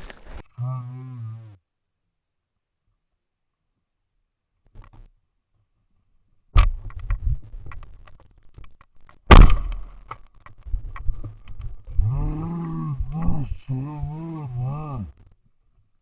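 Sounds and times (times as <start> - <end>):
clicks and rustling: 6.6 - 13.4
shotgun shot: 9.3 - 9.9.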